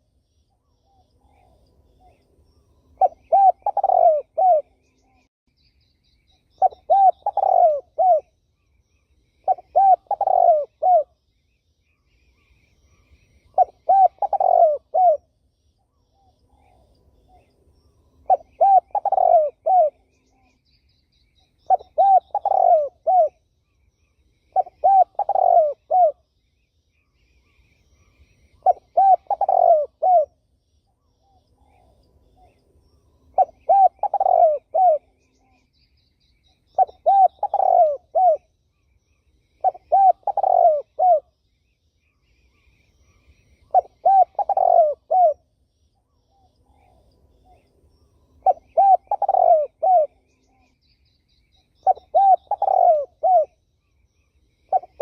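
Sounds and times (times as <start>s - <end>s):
turtle dove cooing: 2.9s - 5.3s, 6.4s - 8.4s, 9.4s - 11.2s, 12.3s - 15.3s, 18.2s - 20.6s, 21.4s - 23.4s, 24.4s - 26.3s, 27.4s - 30.4s, 33.3s - 35.8s, 36.5s - 38.5s, 39.4s - 41.4s, 42.4s - 53.6s, 54.6s - 55.0s.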